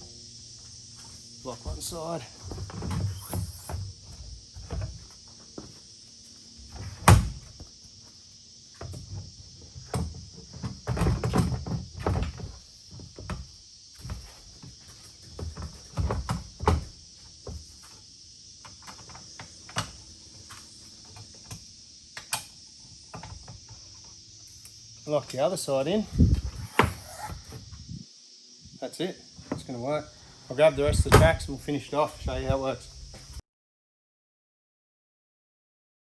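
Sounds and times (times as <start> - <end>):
steady high hiss: 0.0 - 33.4.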